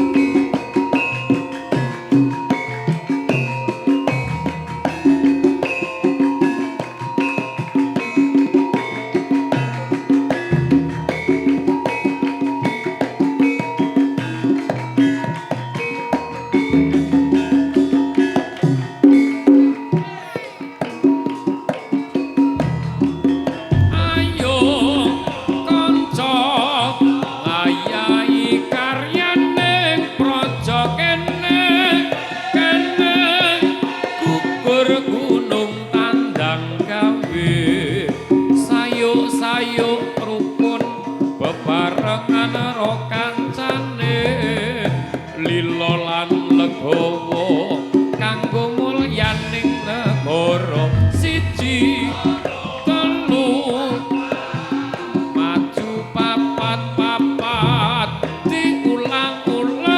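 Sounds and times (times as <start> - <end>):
struck metal keyed instruments: 0.0 - 59.9
wavering high melody: 0.0 - 59.9
drums: 35.5 - 59.9.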